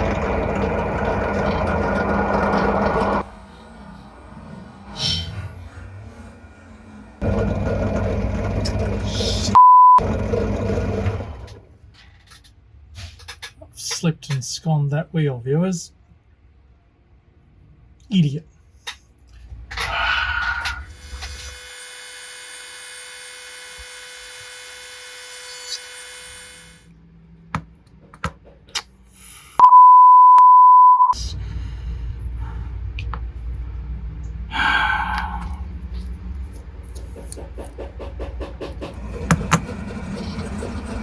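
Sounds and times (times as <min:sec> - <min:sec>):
censor bleep tone: 0:09.6 - 0:10.0, 0:29.6 - 0:31.2
low rumbling noise: 0:31.2 - 0:37.2.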